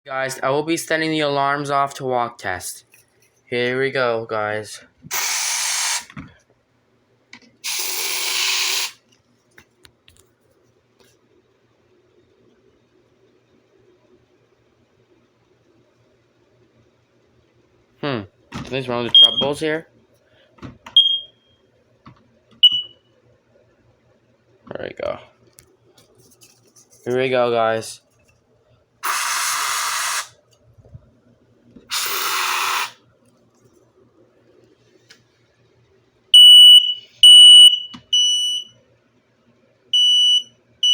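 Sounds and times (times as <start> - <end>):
aerosol spray hissing: 5.1 - 6.1, 7.6 - 9.0, 29.0 - 30.4, 31.9 - 33.0.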